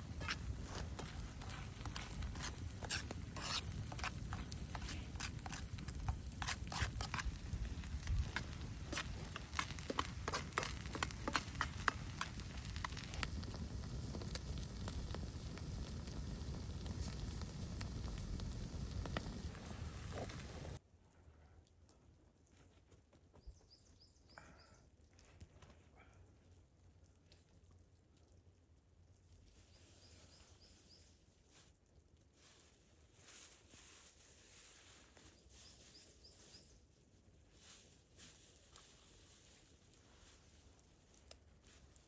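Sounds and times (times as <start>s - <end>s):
low fire rumble: 0.0s - 23.2s, 25.0s - 30.7s
wood fire crackling: 0.0s - 23.4s, 25.0s - 42.0s.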